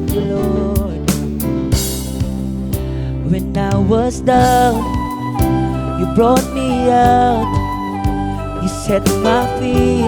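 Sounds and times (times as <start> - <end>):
bass: 0.0 - 10.0
guitar: 0.0 - 10.0
keyboard notes: 0.0 - 10.0
drum hits: 1.1 - 3.0.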